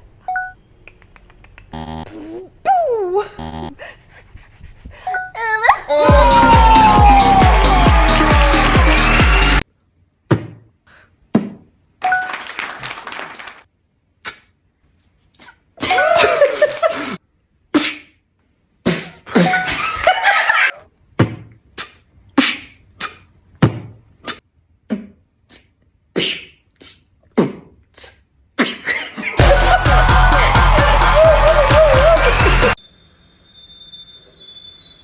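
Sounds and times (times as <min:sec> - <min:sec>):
beatboxer popping sounds: 0:00.8 - 0:02.8, 0:14.2 - 0:14.6, 0:21.2 - 0:28.8
beatboxer breathy hissing: 0:02.1 - 0:02.6.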